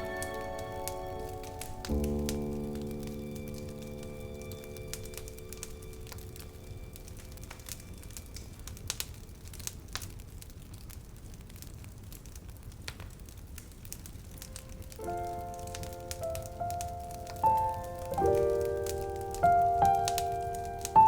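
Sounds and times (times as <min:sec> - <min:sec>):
music with held notes: 0:00.0 - 0:09.2, 0:15.0 - 0:21.0
faint small clicks and crackles: 0:00.0 - 0:21.0.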